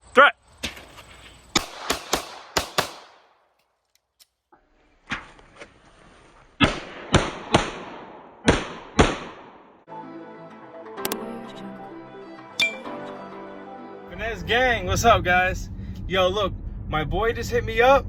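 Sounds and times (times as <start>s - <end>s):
pistol shots: 1.5s - 3.4s, 6.6s - 9.7s.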